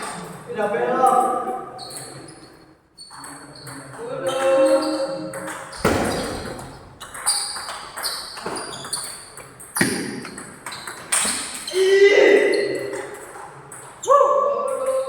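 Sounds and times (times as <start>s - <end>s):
heavy thump: 5.8s - 6.9s.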